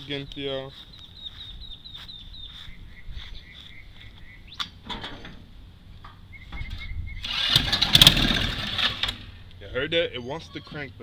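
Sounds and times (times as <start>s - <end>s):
birds chirping: 0.0s - 7.6s, 9.9s - 11.0s
engine starter cranking: 7.2s - 9.4s.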